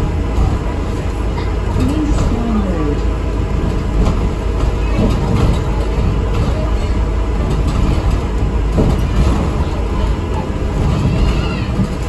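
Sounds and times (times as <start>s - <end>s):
bus engine and road rumble: 0.0s - 12.0s
light rattles: 3.4s - 12.0s.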